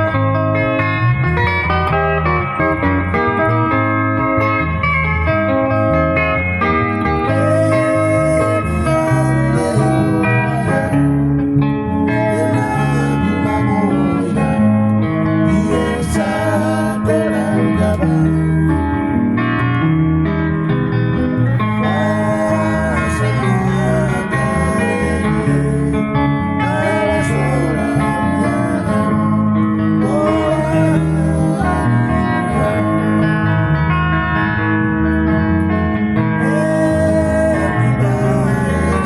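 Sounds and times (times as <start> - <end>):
bass line: 0.0 - 39.0
guitars: 0.0 - 39.0
person singing: 7.2 - 11.3, 11.9 - 14.8, 15.4 - 18.8, 21.5 - 33.3, 36.4 - 39.0.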